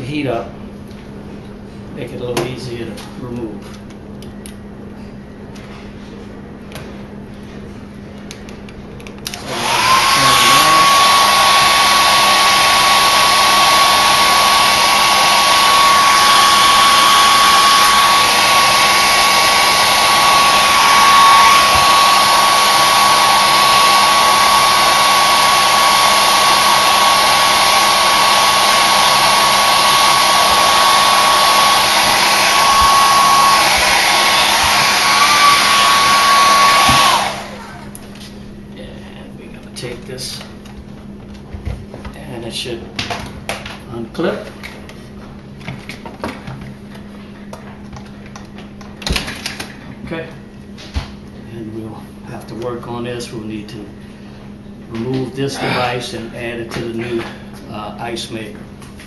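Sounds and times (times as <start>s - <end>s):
hair dryer running: 9.2s - 38.4s, 55.0s - 57.4s.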